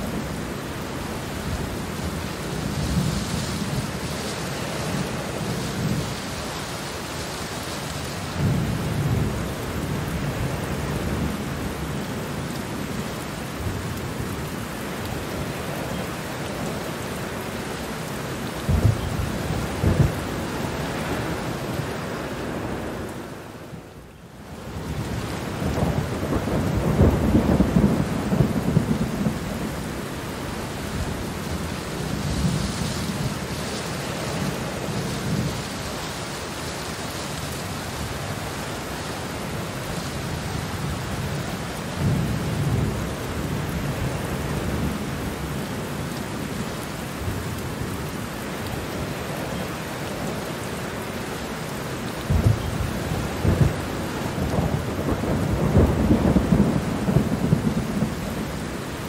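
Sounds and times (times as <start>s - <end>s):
steady rain falling: 0.0s - 59.0s
thunder rumbling: 18.6s - 21.6s, 24.8s - 35.8s, 52.2s - 59.0s.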